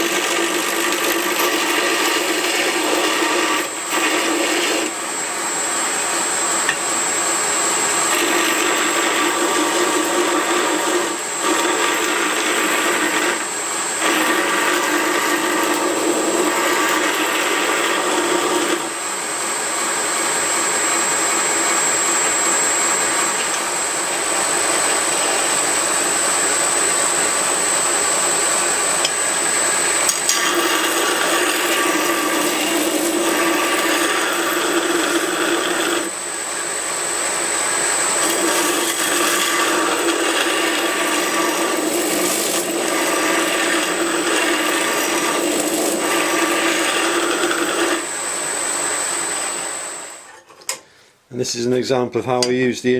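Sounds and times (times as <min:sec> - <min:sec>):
belt grinder grinding: 0:00.0 - 0:05.0, 0:07.8 - 0:19.0, 0:28.8 - 0:36.2, 0:38.0 - 0:48.5
high machine whine: 0:00.0 - 0:50.8.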